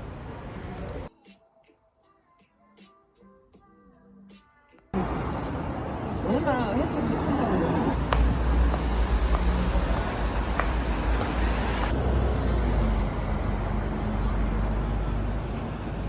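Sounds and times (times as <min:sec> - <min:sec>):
road traffic rumble: 0:05.0 - 0:16.0.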